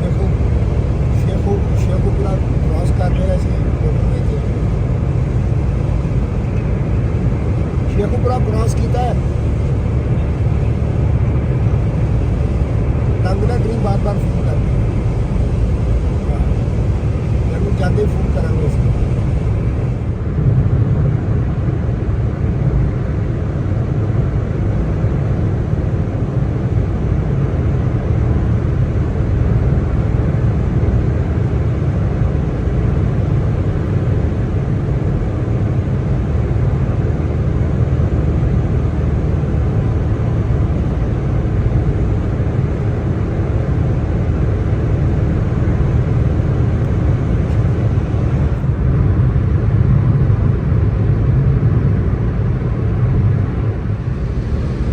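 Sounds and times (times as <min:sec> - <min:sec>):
road and engine rumble: 0:00.0 - 0:54.9
tyres hissing on wet road: 0:54.0 - 0:54.9.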